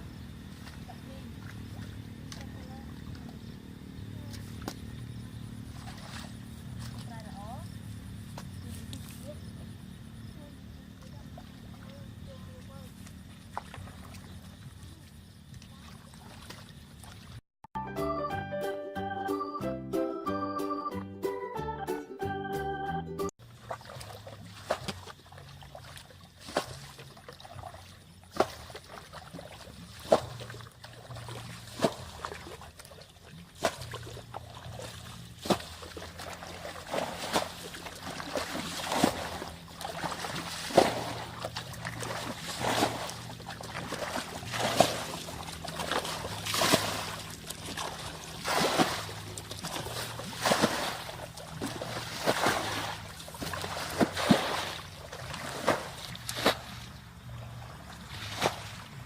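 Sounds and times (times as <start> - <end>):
water splashing: 0.0 - 9.6, 10.8 - 17.4, 23.4 - 59.0
water trickling: 23.4 - 58.2.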